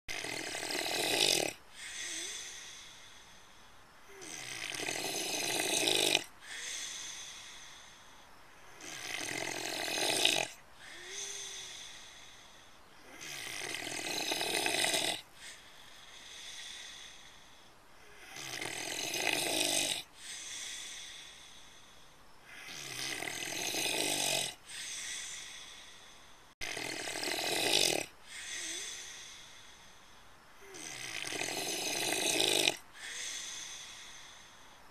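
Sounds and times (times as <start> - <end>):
pig snoring: 0.1 - 3.0, 4.0 - 7.7, 8.6 - 12.4, 13.0 - 17.2, 18.0 - 21.6, 22.4 - 25.9, 26.6 - 29.4, 30.6 - 34.4.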